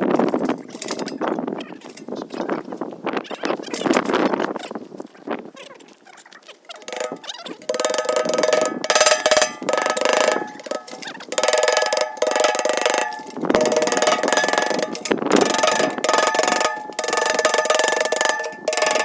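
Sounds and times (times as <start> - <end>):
metal strikes on steel pail: 6.8 - 19.0.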